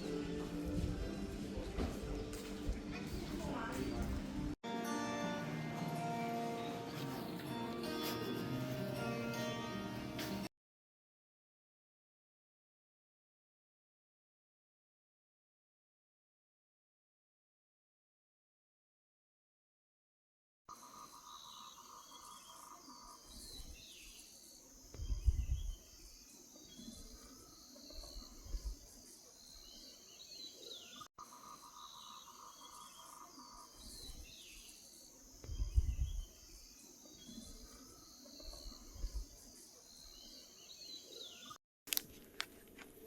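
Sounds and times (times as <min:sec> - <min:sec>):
insect chorus: 0:20.7 - 0:41.5
bird chirps: 0:20.7 - 0:41.6.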